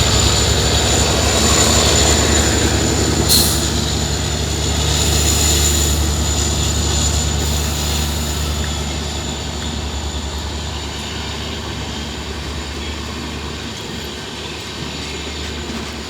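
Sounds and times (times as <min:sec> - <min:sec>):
locomotive engine droning: 0:00.0 - 0:16.0.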